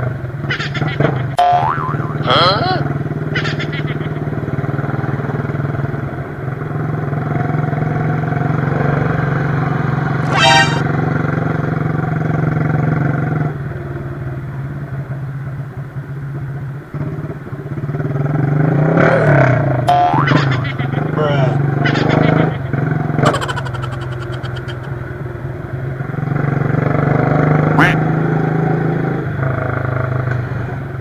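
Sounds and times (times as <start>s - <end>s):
short horn beep: 10.2s - 10.8s.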